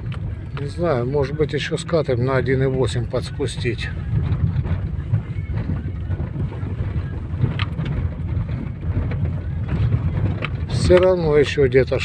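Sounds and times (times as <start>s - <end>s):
car cabin rumble on rough road: 0.0s - 12.0s
suspension knocks: 2.6s - 11.7s.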